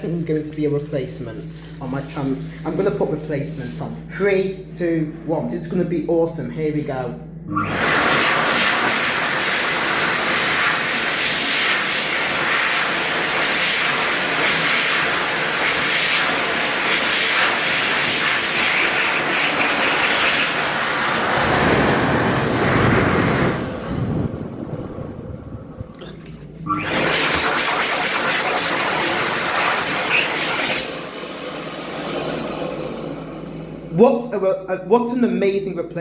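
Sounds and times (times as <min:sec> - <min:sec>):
hand dryer blowing air: 0:07.5 - 0:33.8.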